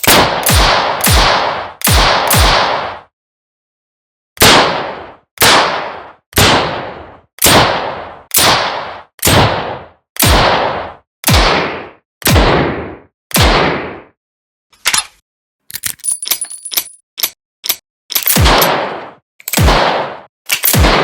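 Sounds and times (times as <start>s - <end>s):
revolver gunshots: 0.0s - 3.1s, 4.4s - 14.1s, 18.3s - 21.0s.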